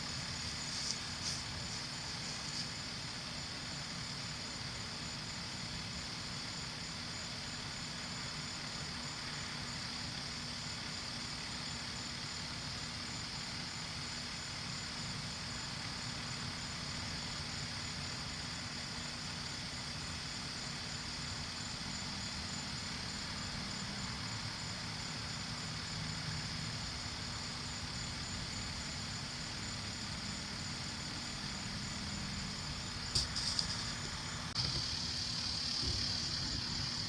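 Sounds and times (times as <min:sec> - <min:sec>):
low steady hum: 0:00.0 - 0:14.5
crickets trilling: 0:00.0 - 0:37.0.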